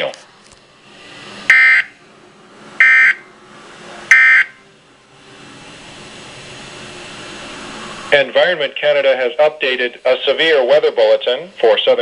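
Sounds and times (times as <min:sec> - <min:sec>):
short electronic data bursts: 0:02.8 - 0:03.2, 0:04.1 - 0:04.6.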